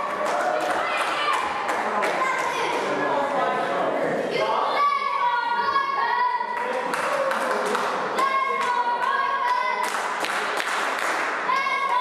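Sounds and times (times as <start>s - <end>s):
hand claps: 6.6s - 12.0s.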